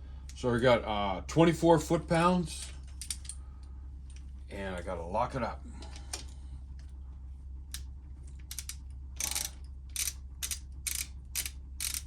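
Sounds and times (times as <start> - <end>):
ratchet wrench clicking: 8.4 - 12.0.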